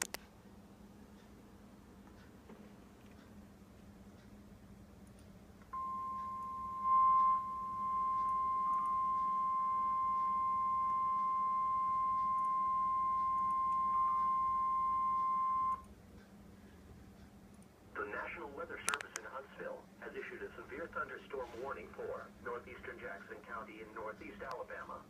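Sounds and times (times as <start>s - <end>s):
steady alarm beep: 5.8s - 15.8s.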